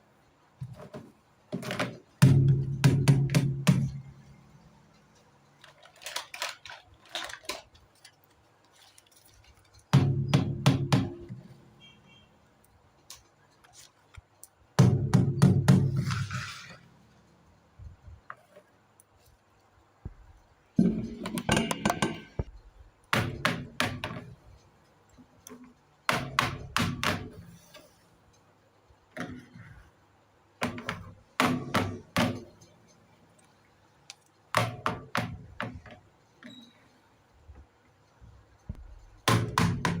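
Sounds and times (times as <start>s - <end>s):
plastic toy pieces clacking: 5.6s - 9.6s.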